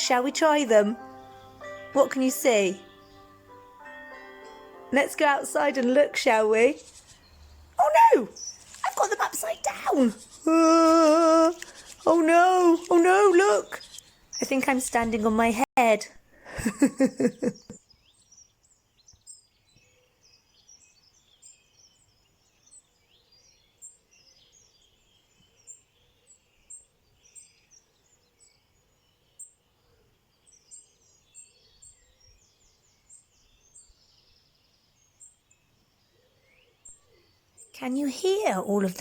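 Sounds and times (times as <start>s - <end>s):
birds chirping: 0.0s - 39.0s.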